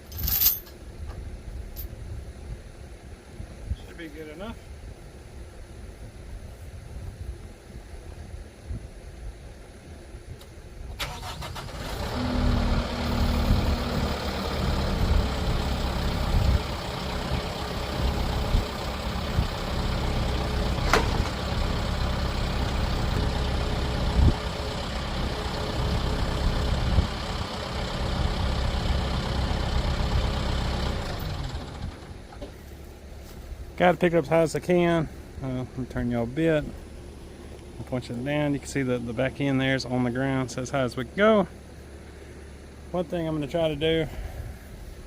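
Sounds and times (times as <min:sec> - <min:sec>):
tractor diesel engine cranking and running: 0:10.9 - 0:45.0.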